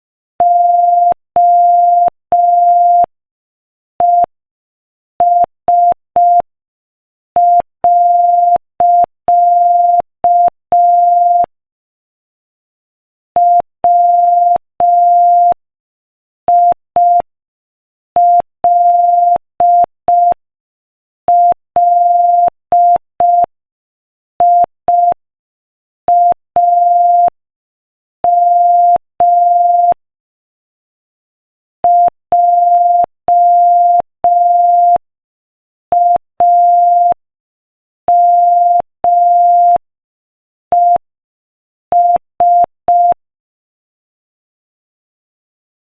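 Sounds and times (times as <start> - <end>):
morse code beeps: 0.4 - 3.1, 28.2 - 30.0, 31.8 - 35.0, 35.9 - 37.2, 38.1 - 39.8, 40.7 - 41.0, 41.9 - 43.2.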